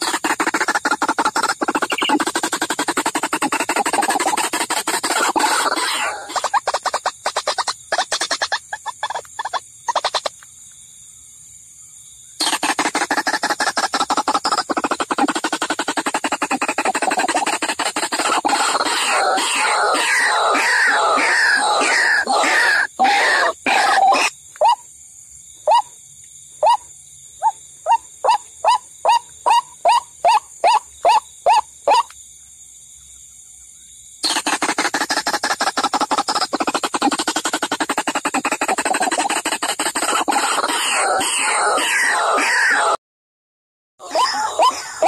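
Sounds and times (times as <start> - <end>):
waterhen calls: 0.0 - 10.3, 12.4 - 24.8, 27.4 - 32.1, 34.2 - 43.0, 44.0 - 45.0.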